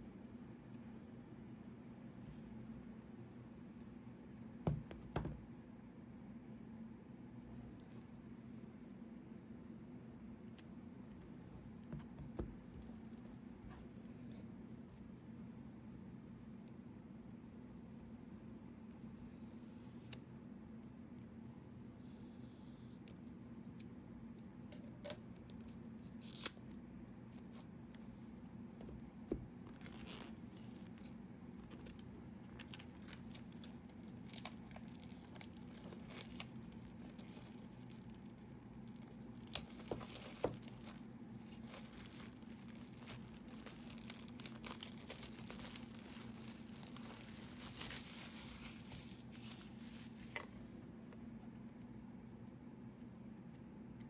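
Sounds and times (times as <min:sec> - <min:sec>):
packaging tearing and crinkling: 0:29.7 - 0:50.3.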